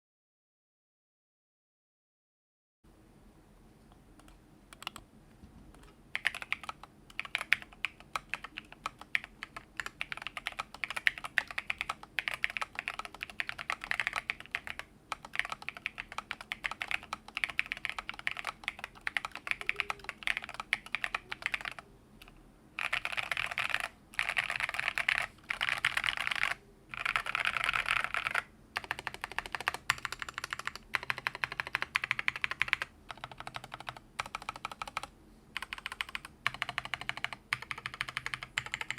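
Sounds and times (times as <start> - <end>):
typing on mechanical keyboard: 4.2 - 5.0, 5.7 - 38.9.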